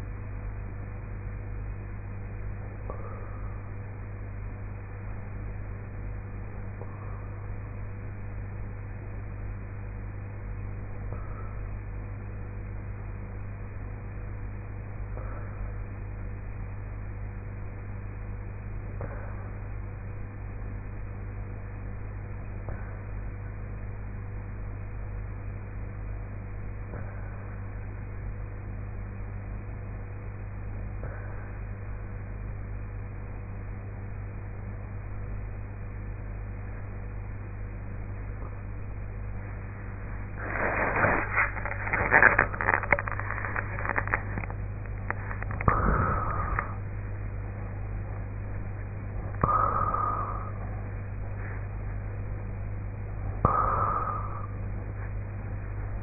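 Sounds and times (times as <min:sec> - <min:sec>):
low electrical hum with hiss: 0:00.0 - 0:56.0
crackling and clicking noise: 0:38.1 - 0:56.0
woman snoring quietly: 0:45.6 - 0:46.8, 0:49.4 - 0:50.8, 0:53.5 - 0:54.6.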